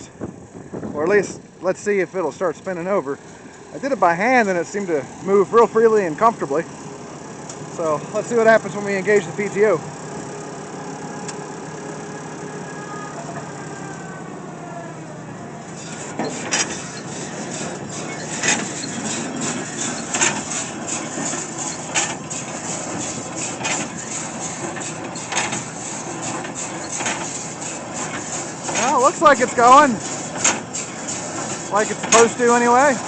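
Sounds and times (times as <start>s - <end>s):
tractor engine running: 0.0s - 33.0s
baler clanking and knocking: 15.8s - 33.0s.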